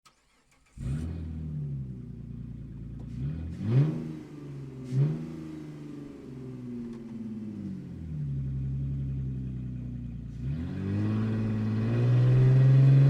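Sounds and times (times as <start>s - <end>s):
motorcycle engine revving: 10.3s - 13.0s.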